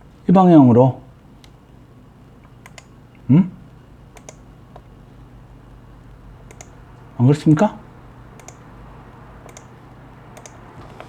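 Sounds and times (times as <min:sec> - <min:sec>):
keyboard and mouse clicks: 0:02.4 - 0:02.9, 0:04.2 - 0:04.9, 0:06.5 - 0:06.8, 0:08.4 - 0:08.6, 0:09.4 - 0:09.8, 0:10.4 - 0:11.0.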